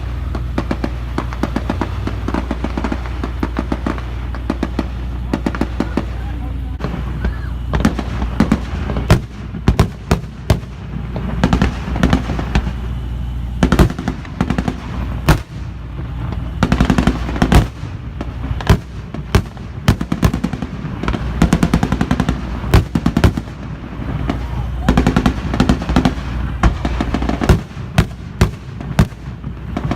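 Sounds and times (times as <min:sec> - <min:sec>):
loud booms: 0:00.0 - 0:29.9
steady low drone: 0:00.0 - 0:29.9.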